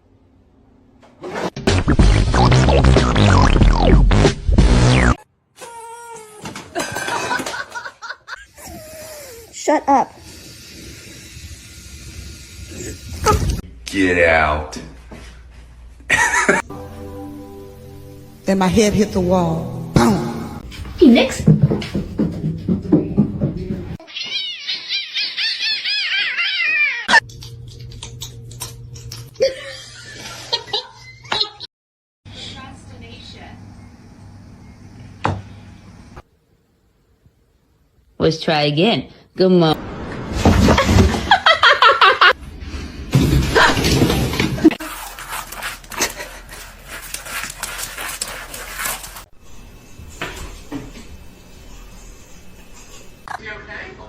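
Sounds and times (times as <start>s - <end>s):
cat mewing high-pitched: 24.0s - 27.2s.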